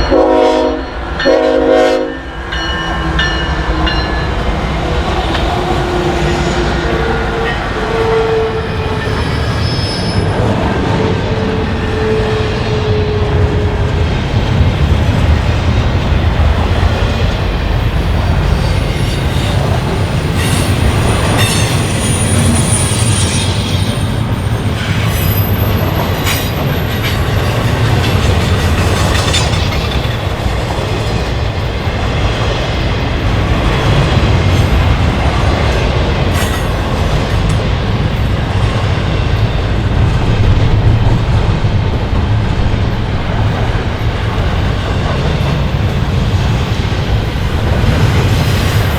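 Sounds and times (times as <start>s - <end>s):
freight train wheels rumbling: 0.0s - 48.9s
high-pitched wheel squeals: 6.3s - 10.5s, 18.6s - 24.2s.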